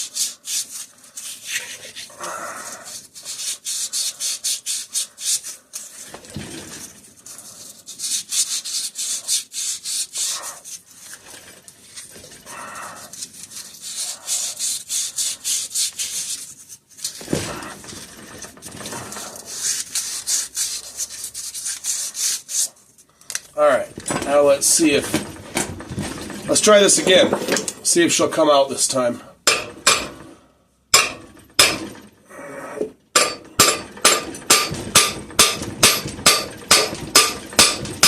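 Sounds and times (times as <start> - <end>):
sandpaper rubbing on metal: 0.0 - 6.2, 6.8 - 11.2, 13.1 - 17.3, 18.8 - 22.9.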